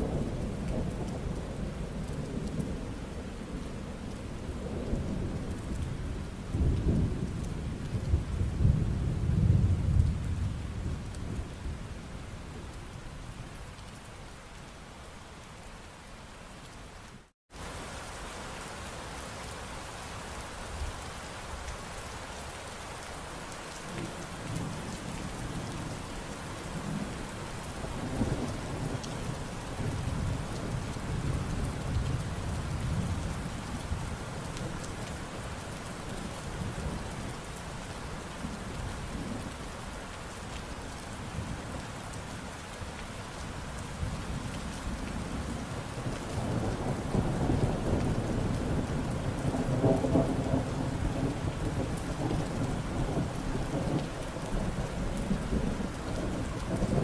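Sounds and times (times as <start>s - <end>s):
low rolling thunder: 0.0s - 12.7s, 43.9s - 57.0s
steady rain falling: 0.0s - 57.0s.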